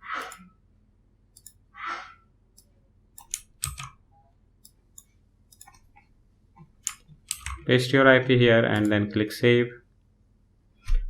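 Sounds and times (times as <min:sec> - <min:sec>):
keyboard and mouse clicks: 0:01.3 - 0:01.6, 0:02.6 - 0:04.0, 0:04.6 - 0:07.7.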